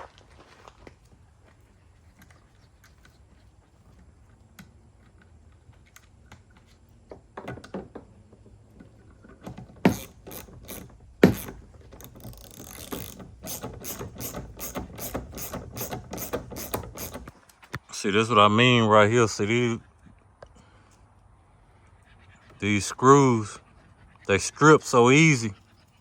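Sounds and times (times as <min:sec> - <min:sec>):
hand ratchet clicking: 0:09.9 - 0:17.4
sharp knocks: 0:10.7 - 0:11.6.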